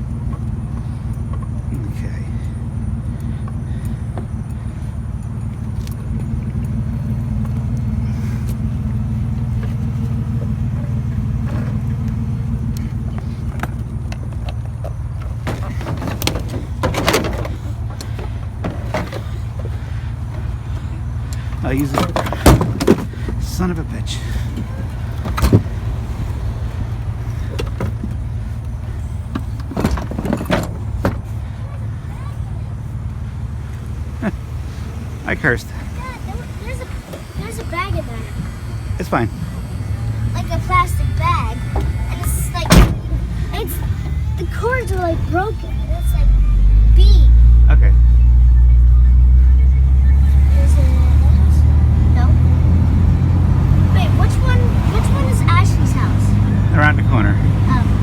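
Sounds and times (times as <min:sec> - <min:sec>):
vehicle engine rumbling: 0:00.0 - 0:58.0
knocks and clatters: 0:09.4 - 0:23.5, 0:24.5 - 0:31.4.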